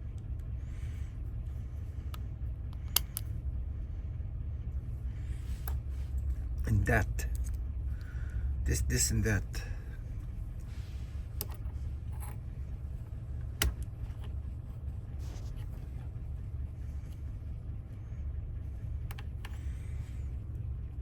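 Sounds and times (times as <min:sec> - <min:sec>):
steady low hum: 0:00.0 - 0:21.0
lock parts clicking: 0:02.1 - 0:03.3.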